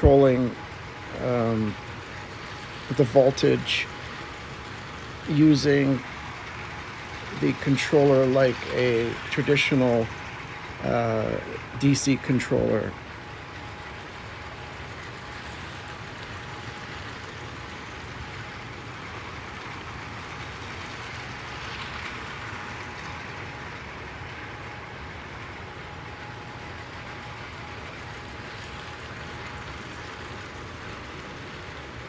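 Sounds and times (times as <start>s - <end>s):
model steam locomotive running: 0.0s - 32.0s.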